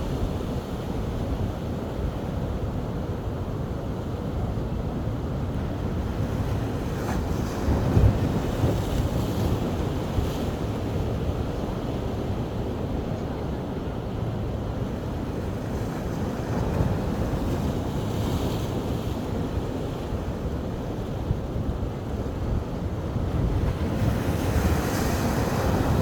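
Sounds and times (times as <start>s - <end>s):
ocean surf washing onto beach: 19.2s - 26.0s.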